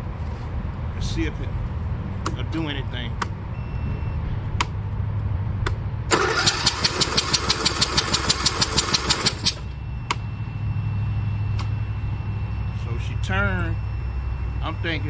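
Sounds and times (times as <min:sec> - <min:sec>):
starter cranking engine: 0:06.1 - 0:09.6
steady low hum: 0:09.3 - 0:15.0.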